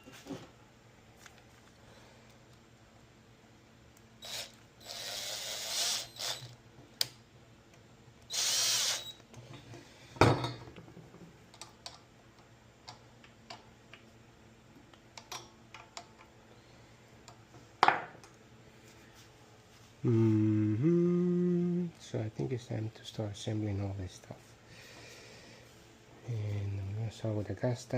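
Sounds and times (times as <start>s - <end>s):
handheld power tool bursts: 4.2s - 6.5s, 8.3s - 9.2s.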